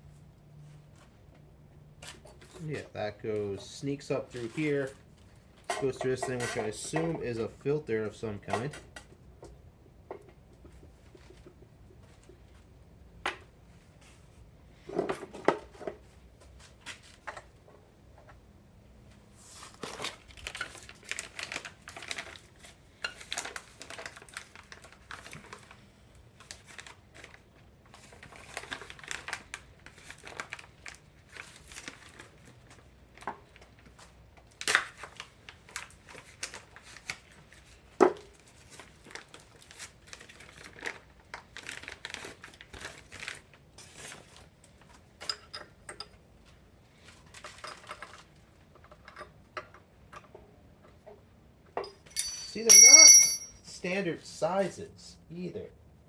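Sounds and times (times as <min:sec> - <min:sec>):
tools and metal fittings handled: 0:52.1 - 0:53.6.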